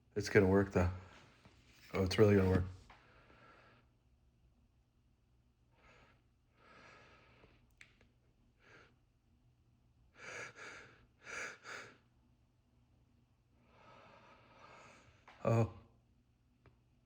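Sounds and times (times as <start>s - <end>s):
man breathing heavily: 5.8s - 7.6s, 10.2s - 12.0s, 13.6s - 15.2s.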